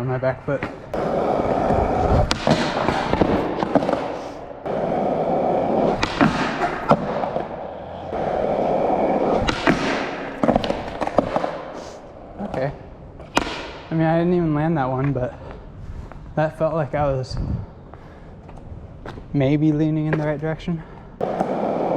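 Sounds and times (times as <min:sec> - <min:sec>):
skateboard wheels rolling: 0:00.6 - 0:13.6, 0:21.2 - 0:21.9
skateboard clacks and impacts: 0:00.6 - 0:13.9, 0:21.2 - 0:21.9.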